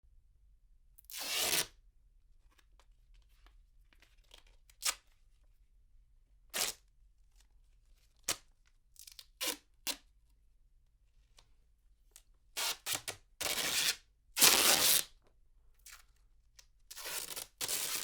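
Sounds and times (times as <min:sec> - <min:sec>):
duct tape ripping: 0:12.6 - 0:15.1.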